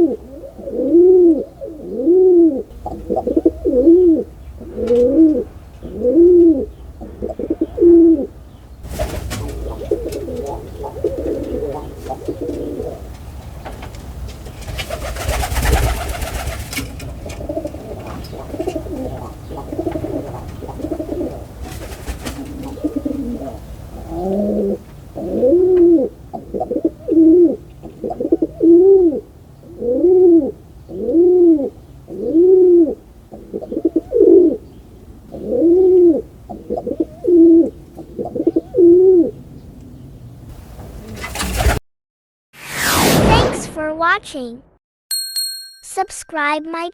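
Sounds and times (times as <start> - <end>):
pigeons cooing: 0.0 - 13.8, 14.4 - 40.2
noisy rustle: 8.8 - 19.3, 19.9 - 24.0, 40.5 - 41.8.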